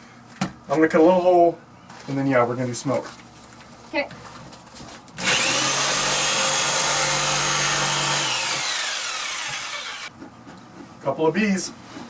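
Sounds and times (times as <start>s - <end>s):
jigsaw motor running: 5.2s - 10.1s.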